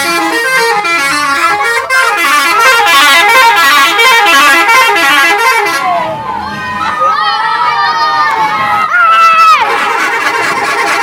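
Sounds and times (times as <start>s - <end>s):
musical bus air horn tune: 0.0s - 6.2s, 9.4s - 11.0s.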